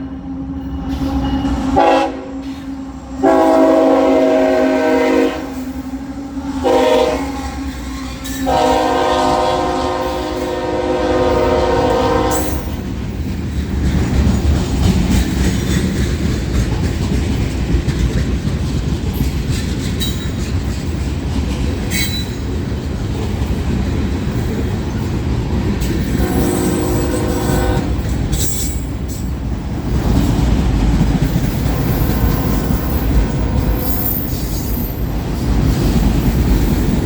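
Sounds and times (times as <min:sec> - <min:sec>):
train rumbling past: 0:00.0 - 0:37.0
locomotive air horn: 0:01.8 - 0:02.6, 0:03.2 - 0:05.6, 0:06.6 - 0:07.6, 0:08.4 - 0:12.7, 0:26.2 - 0:28.0.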